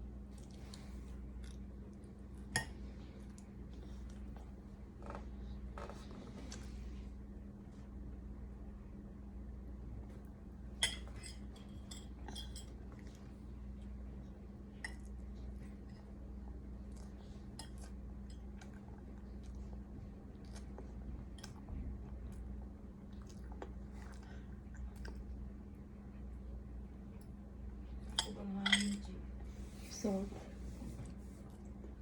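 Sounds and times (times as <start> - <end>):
steady low hum: 0.0 - 32.0.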